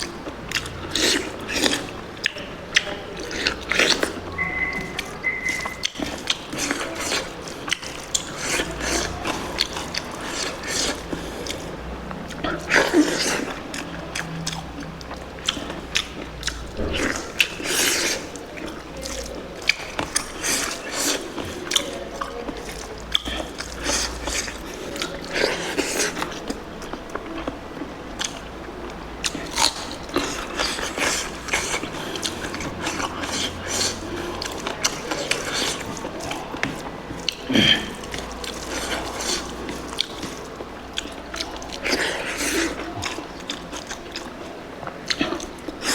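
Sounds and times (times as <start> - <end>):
chewing and crunching food: 0.0 - 45.9.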